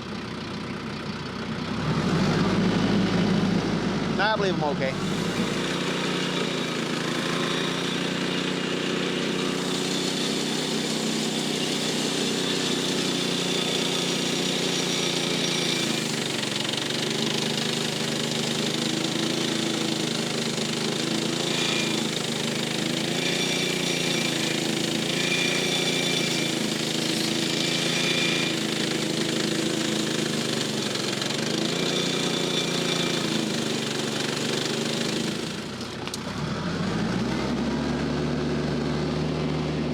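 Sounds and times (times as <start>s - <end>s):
sawmill engine sawing log: 0.0s - 39.9s.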